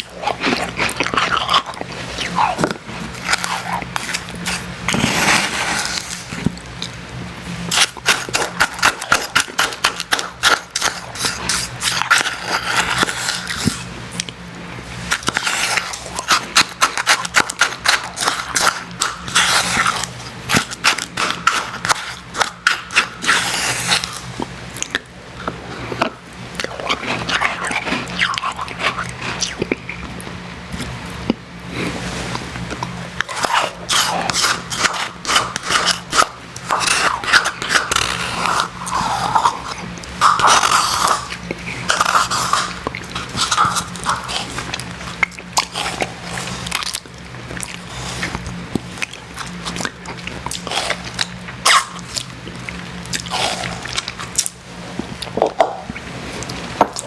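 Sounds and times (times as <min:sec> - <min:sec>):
crunching and chewing frozen slush: 0:00.0 - 0:57.0
steady low hum: 0:00.0 - 0:57.0.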